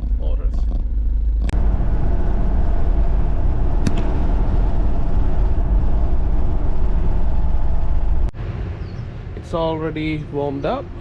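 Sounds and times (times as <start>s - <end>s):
diesel engine running: 0.0s - 8.4s.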